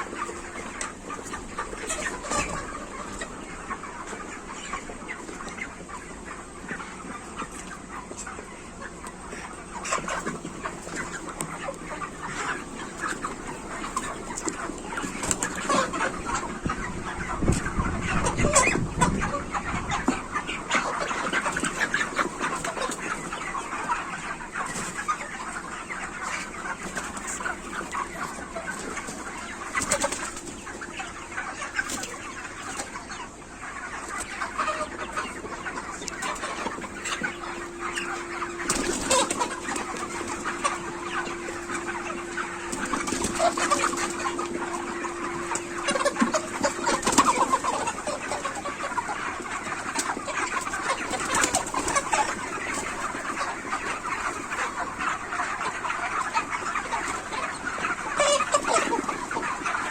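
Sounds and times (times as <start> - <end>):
chickens clucking and chirping: 0.0 - 59.9
chickens shuffling: 0.0 - 59.9.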